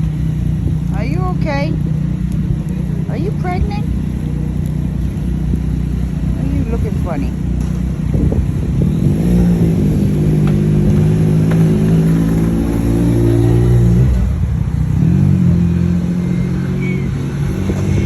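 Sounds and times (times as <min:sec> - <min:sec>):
vehicle engine accelerating: 0:00.0 - 0:18.0.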